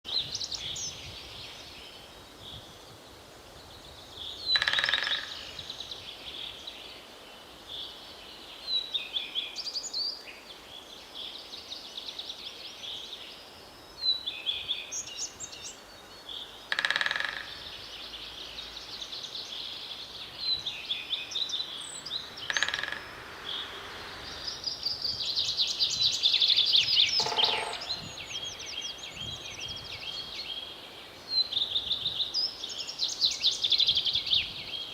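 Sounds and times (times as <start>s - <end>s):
songbirds singing: 0.1s - 34.9s
woodpecker drumming on wood: 4.5s - 5.4s, 16.7s - 17.7s, 22.4s - 23.1s, 27.2s - 28.1s.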